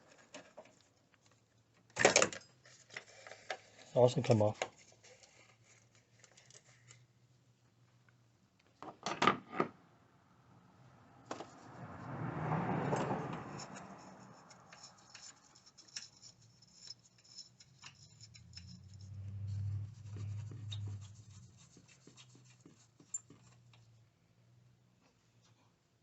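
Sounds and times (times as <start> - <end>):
wrench and metal parts clicking: 13.3 - 19.2
low hum: 18.2 - 21.6.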